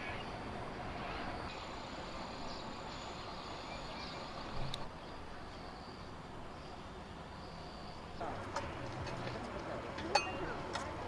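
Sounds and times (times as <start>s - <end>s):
faint insect chirping: 0.0s - 8.2s
outdoor background hiss: 0.0s - 11.0s.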